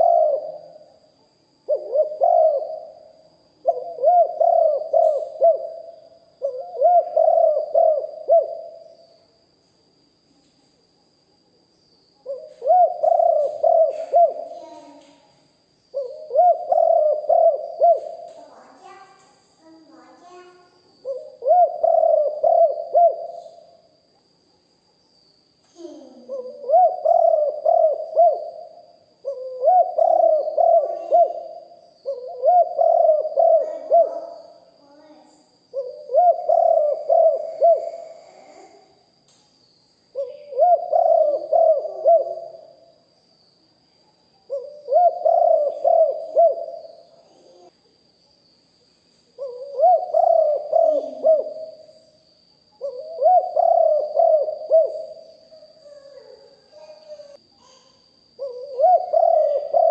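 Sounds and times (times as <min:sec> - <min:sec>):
dove cooing: 0:00.0 - 0:09.0, 0:12.2 - 0:15.0, 0:15.9 - 0:19.1, 0:20.0 - 0:23.7, 0:25.8 - 0:38.8, 0:40.1 - 0:42.8, 0:44.4 - 0:47.7, 0:49.4 - 0:51.9, 0:52.8 - 0:57.4, 0:58.3 - 0:59.9.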